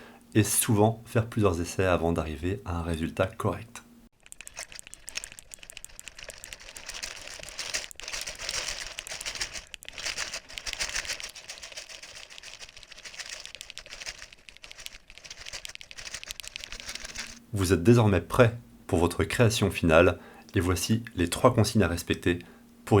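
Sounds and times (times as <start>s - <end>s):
paperclips rattling in a box: 4.2s - 17.4s.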